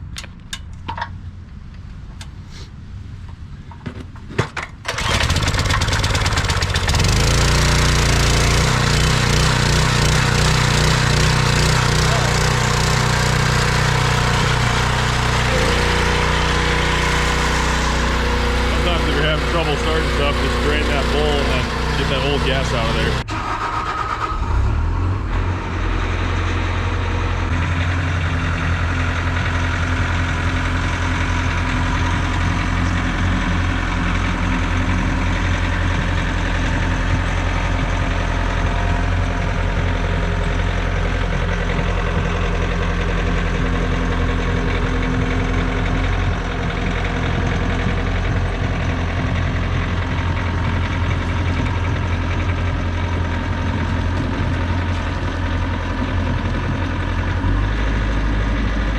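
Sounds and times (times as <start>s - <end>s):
small gas engine running: 4.9s - 58.9s.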